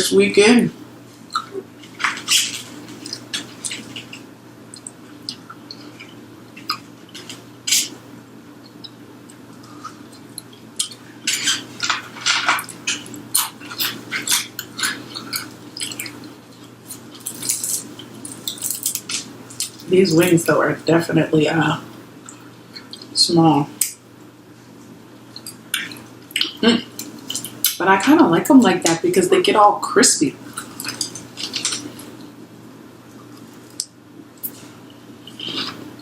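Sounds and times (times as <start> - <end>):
steady low hum: 0.0 - 36.0
crunching fried chicken: 1.3 - 7.5, 9.3 - 19.9, 30.4 - 32.2.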